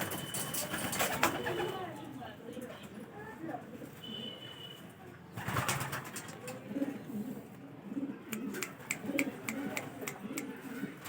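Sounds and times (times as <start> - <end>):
pigeons cooing: 5.4 - 11.0
sharp clicks: 8.3 - 10.6.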